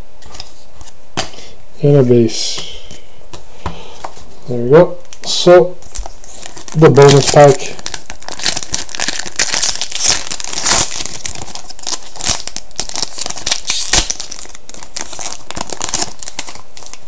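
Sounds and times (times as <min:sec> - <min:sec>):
wrapper crinkling and tearing: 0:05.8 - 0:17.0.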